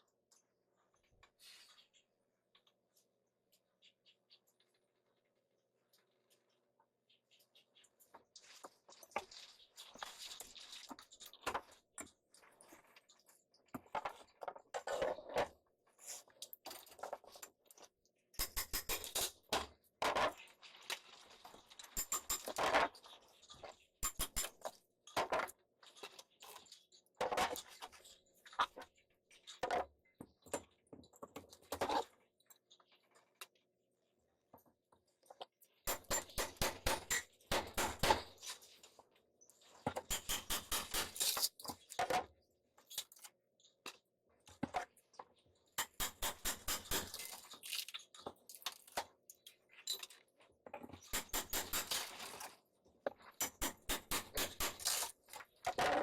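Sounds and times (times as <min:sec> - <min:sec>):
clicking and knocking of hand work: 0:18.4 - 0:20.3, 0:21.8 - 0:23.0, 0:24.0 - 0:25.6, 0:35.8 - 0:38.5, 0:39.8 - 0:42.2, 0:45.8 - 0:47.5, 0:50.7 - 0:52.4, 0:53.0 - 0:56.0.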